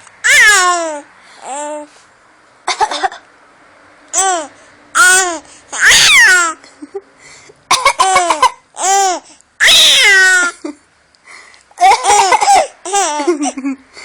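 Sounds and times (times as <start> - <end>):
baby laughing: 7.7 - 10.8, 11.8 - 13.8.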